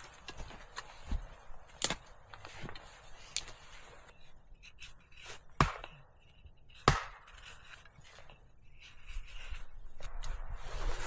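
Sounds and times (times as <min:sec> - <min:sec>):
firewood chopping strikes: 0:05.4 - 0:06.1, 0:06.7 - 0:07.6.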